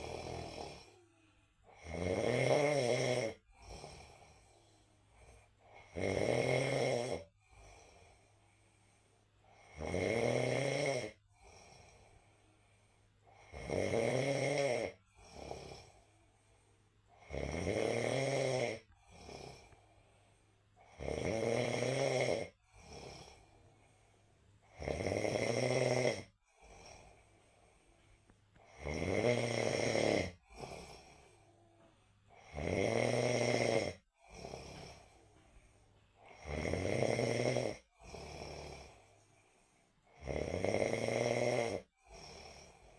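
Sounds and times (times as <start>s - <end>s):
person snoring heavily: 0.0s - 4.6s, 5.2s - 8.2s, 9.5s - 12.1s, 13.3s - 16.1s, 17.2s - 19.8s, 20.8s - 23.5s, 24.7s - 27.6s, 28.7s - 31.5s, 32.3s - 35.2s, 36.2s - 39.1s, 40.1s - 42.9s.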